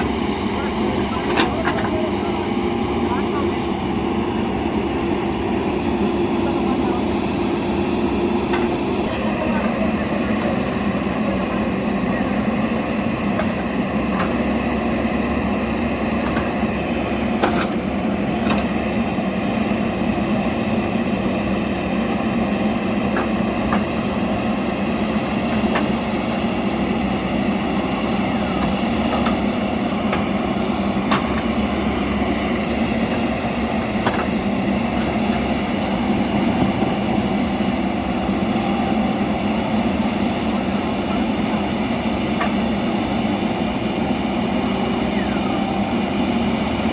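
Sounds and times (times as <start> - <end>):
diesel engine running: 0.0 - 46.9.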